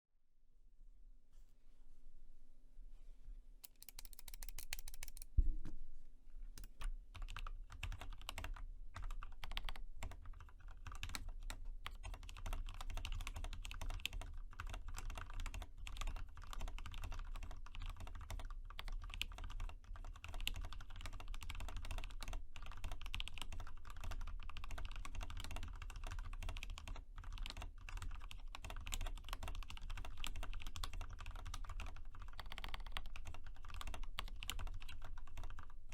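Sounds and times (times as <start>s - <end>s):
fast mechanical keyboard typing: 3.6s - 5.3s, 6.6s - 35.9s.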